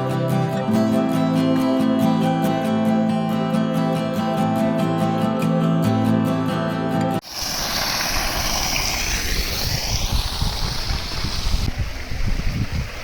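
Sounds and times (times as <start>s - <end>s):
flowing water: 7.2s - 13.0s
wind buffeting microphone: 8.1s - 13.0s.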